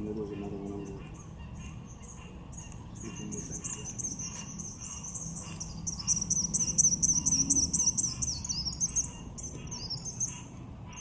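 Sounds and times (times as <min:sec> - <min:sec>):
songbird chirping: 0:00.0 - 0:11.0.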